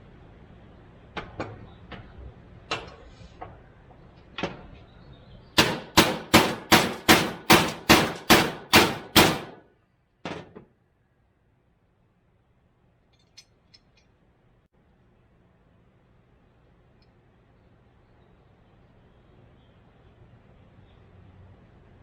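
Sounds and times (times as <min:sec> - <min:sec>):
hammer striking metal: 0:05.6 - 0:09.6.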